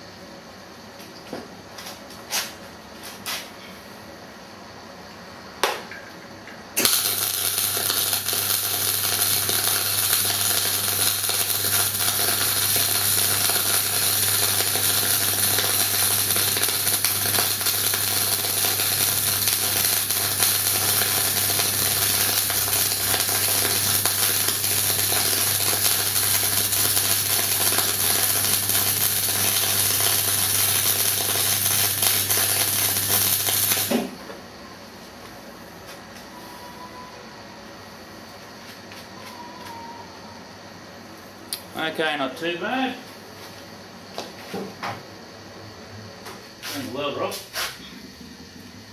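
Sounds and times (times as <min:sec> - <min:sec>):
welding arc hissing: 0:06.8 - 0:34.2, 0:46.6 - 0:48.1.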